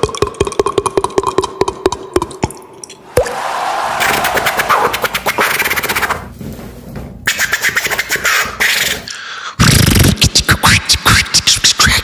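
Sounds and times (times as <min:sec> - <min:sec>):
beatboxing scratch effects: 0:04.4 - 0:06.2, 0:07.3 - 0:12.0
beatboxing percussive sounds: 0:07.3 - 0:12.0.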